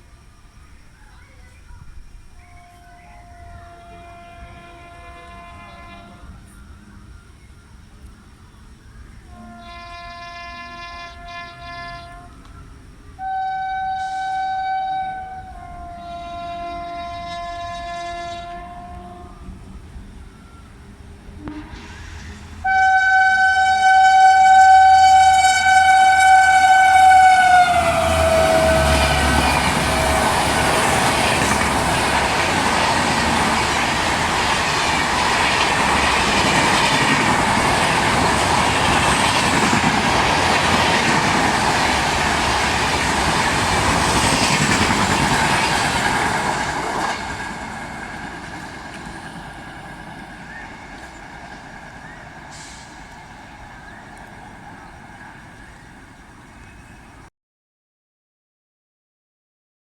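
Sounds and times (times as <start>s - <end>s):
twin-tone locomotive horn: 2.4s - 6.6s, 9.2s - 55.7s
train wheels clattering over rail joints: 28.7s - 54.9s.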